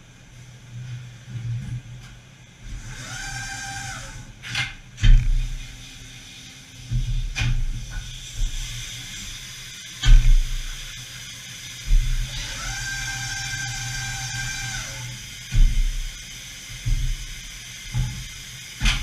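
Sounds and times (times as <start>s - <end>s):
machine low hum: 0.0s - 19.0s
machine whine: 8.0s - 19.0s.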